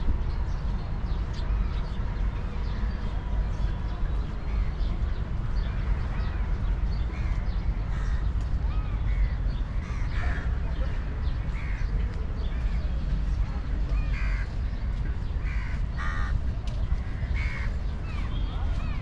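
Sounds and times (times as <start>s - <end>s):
crows cawing: 14.1s - 14.6s, 15.4s - 16.4s, 17.1s - 17.8s.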